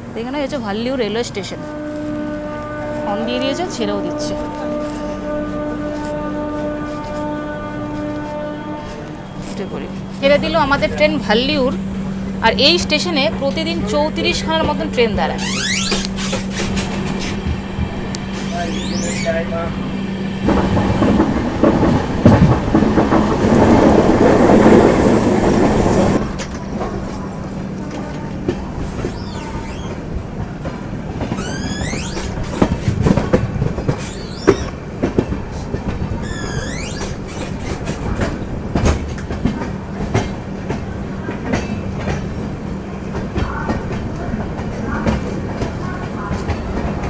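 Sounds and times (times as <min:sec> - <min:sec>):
train rumbling on track: 0:00.0 - 0:47.0
wheels clacking over rail joints: 0:12.8 - 0:47.0
wheel squeals: 0:15.3 - 0:17.6, 0:18.2 - 0:19.8, 0:28.7 - 0:30.2, 0:31.2 - 0:34.9, 0:35.5 - 0:39.0.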